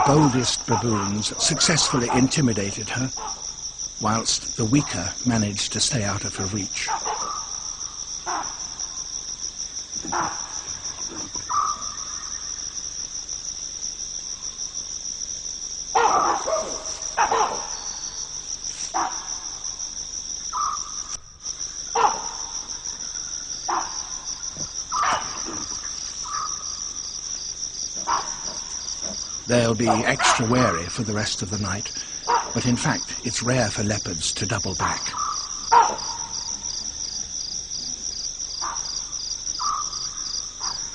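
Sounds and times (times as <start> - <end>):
baboons calling: 0.0 - 9.1, 9.9 - 13.0, 15.8 - 19.6, 20.5 - 21.2, 21.8 - 37.3, 37.9 - 40.9
crickets trilling: 0.0 - 40.9.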